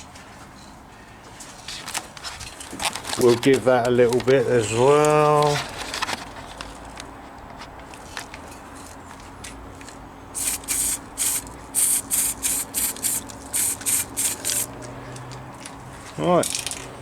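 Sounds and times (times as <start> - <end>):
aerosol spray can hissing: 10.4 - 14.7.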